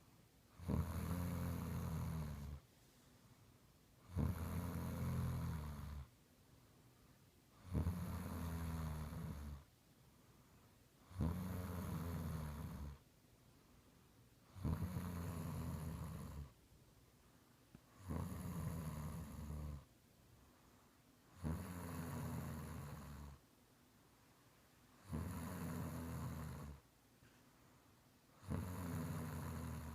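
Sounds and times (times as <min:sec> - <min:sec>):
quiet breathing: 0:00.0 - 0:29.9
low-pitched snoring: 0:00.5 - 0:02.6, 0:04.0 - 0:06.1, 0:07.6 - 0:09.7, 0:11.0 - 0:13.0, 0:14.5 - 0:16.6, 0:17.9 - 0:19.9, 0:21.3 - 0:23.4, 0:25.0 - 0:26.8, 0:28.4 - 0:29.9.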